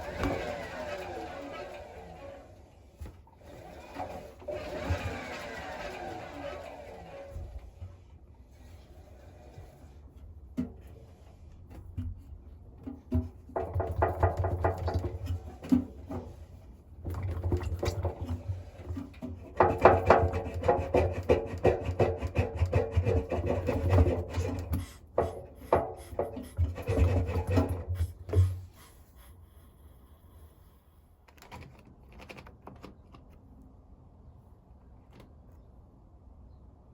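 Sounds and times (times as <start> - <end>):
washing machine drum scraping and rattling: 0.0 - 29.0.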